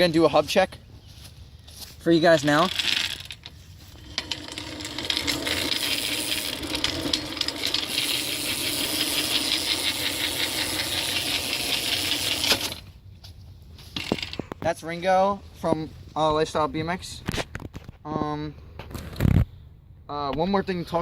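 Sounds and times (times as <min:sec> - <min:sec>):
bike hub ratchet clicking: 0:02.7 - 0:12.9.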